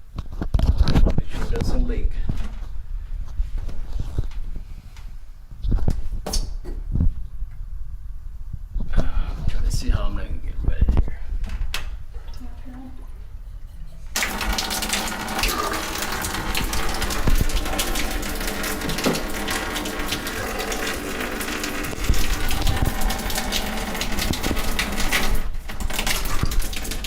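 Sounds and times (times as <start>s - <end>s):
shower water gushing: 12.2s - 27.0s.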